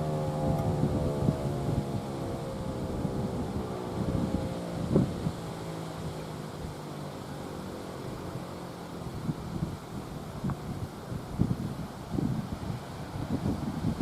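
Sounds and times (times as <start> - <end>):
warning siren winding down: 0.0 - 5.4
wind buffeting microphone: 0.0 - 6.8, 9.0 - 14.0.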